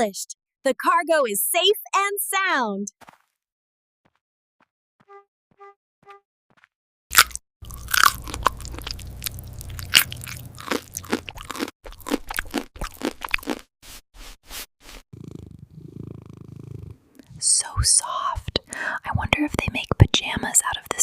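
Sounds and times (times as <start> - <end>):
crisp crunching: 7.1 - 13.6
low hum: 7.6 - 11.5.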